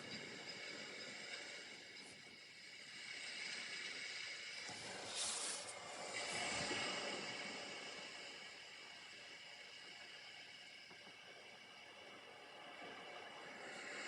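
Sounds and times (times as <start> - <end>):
paintbrush on paper: 5.0 - 5.8.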